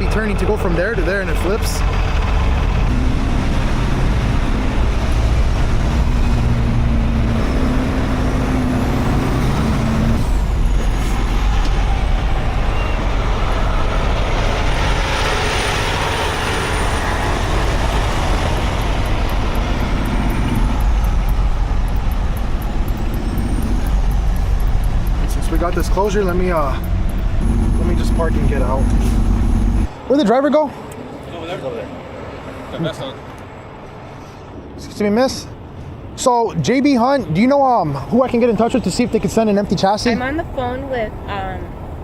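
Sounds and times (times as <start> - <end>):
diesel truck engine running: 0.0 - 30.0
road noise: 0.0 - 42.0
fast regular ticking: 17.6 - 29.9.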